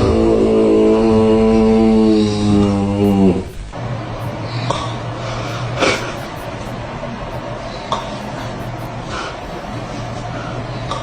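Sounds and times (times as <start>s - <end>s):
person snoring: 5.2s - 10.4s.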